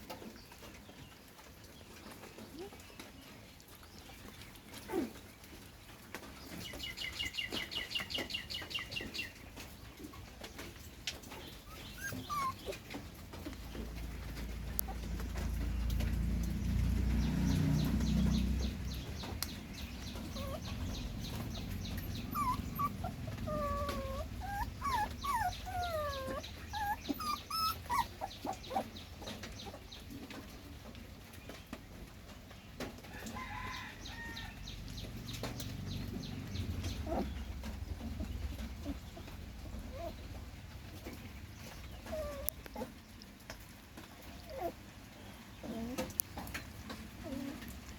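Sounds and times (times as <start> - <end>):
chickens clucking: 17.2 - 30.4.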